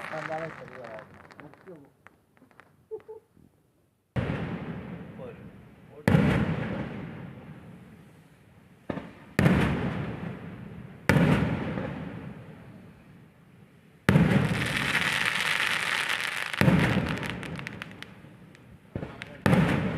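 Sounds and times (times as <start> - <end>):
fireworks bangs: 0.0 - 3.2, 4.2 - 5.4, 6.0 - 7.8, 8.9 - 12.3, 14.1 - 19.9
fireworks crackling: 0.0 - 3.2, 14.1 - 19.9.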